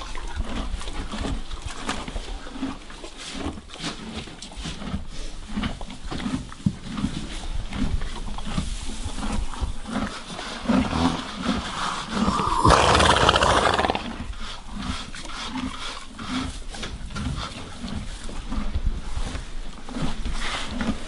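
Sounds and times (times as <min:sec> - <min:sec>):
horse snorting: 0:11.6 - 0:14.4.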